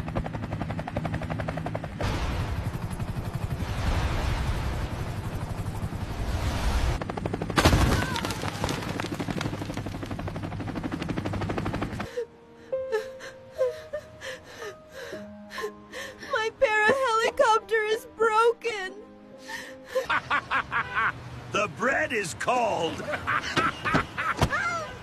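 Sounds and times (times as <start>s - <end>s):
helicopter rotor chop: 0.0s - 12.1s.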